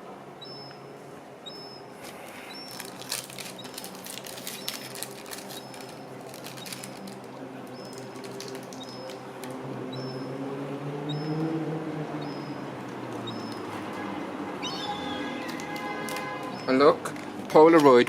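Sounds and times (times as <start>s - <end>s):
gull chick peeping: 0.4s - 0.8s, 1.4s - 2.8s, 4.4s - 4.9s, 5.5s - 6.0s, 11.1s - 11.5s, 12.2s - 12.6s, 13.2s - 13.7s, 14.6s - 15.6s.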